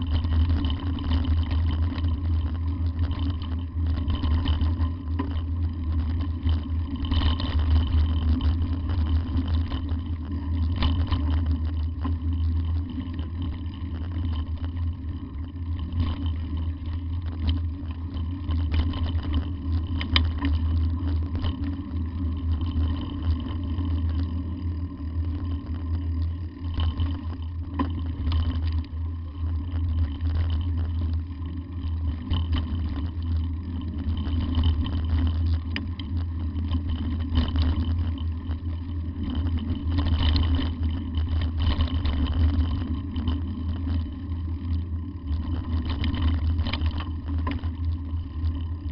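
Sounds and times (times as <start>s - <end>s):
vehicle rumbling on dirt road: 0.0s - 48.9s.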